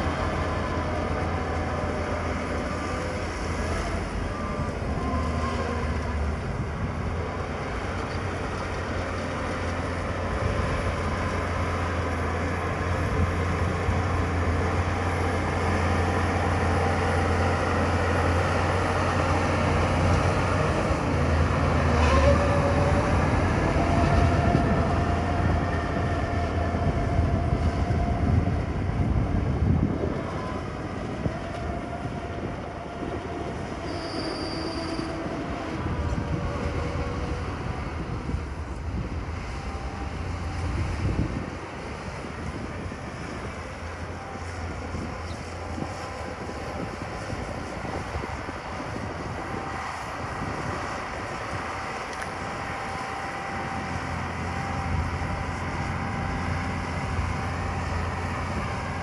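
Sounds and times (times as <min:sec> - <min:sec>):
bulldozer diesel engine rumbling: 0:00.0 - 0:59.0
steel tracks squealing: 0:13.5 - 0:38.5.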